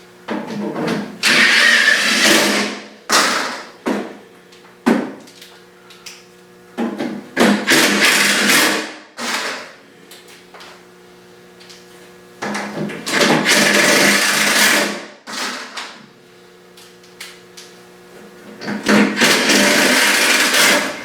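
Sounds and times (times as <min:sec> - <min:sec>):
power tool running: 0:01.2 - 0:03.7, 0:07.4 - 0:09.8, 0:13.0 - 0:15.8, 0:18.6 - 0:21.0.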